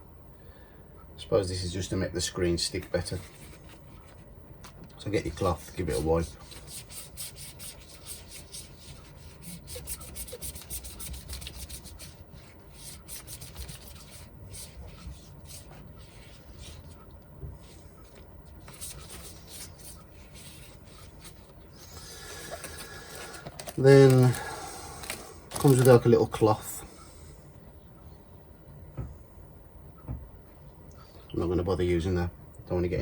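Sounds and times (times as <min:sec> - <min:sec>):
cloth wiping glass screen: 0:05.1 - 0:24.3.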